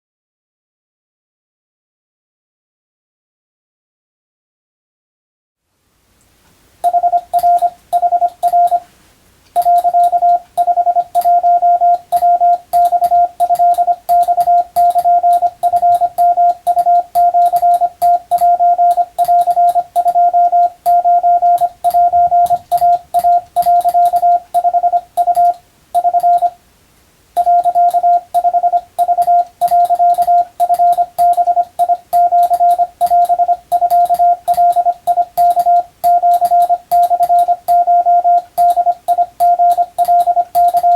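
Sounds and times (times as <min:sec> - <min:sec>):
morse code tone beeping: 0:06.8 - 0:08.9, 0:09.6 - 0:26.6, 0:27.4 - 0:40.9.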